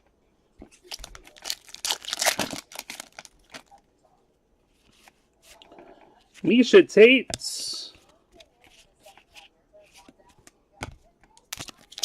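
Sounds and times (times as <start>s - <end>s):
card pack wrapper tearing: 0.8s - 3.7s, 11.5s - 12.0s.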